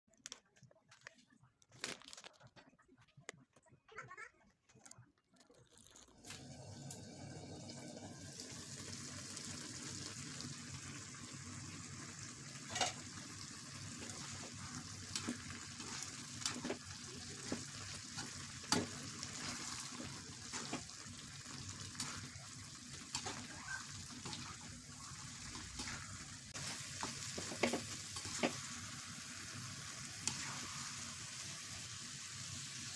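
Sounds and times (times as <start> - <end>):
food sizzling in a pan: 6.2 - 32.9
spatula scraping a pan: 14.0 - 28.7.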